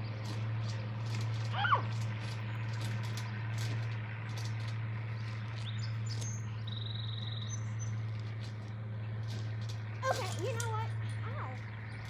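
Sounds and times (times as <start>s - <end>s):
small birds chirping: 0.0s - 12.0s
steady low hum: 0.0s - 12.0s
buzzy bird trill: 5.2s - 8.1s.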